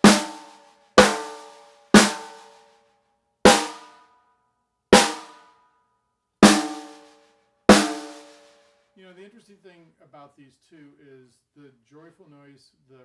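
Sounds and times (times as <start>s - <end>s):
snare drum strokes ringing: 0.0s - 2.6s, 3.5s - 4.0s, 5.0s - 5.4s, 6.4s - 8.6s.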